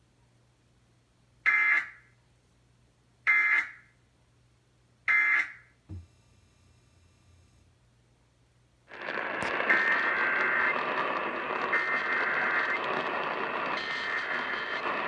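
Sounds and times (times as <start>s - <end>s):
soft click: 5.9s - 7.8s.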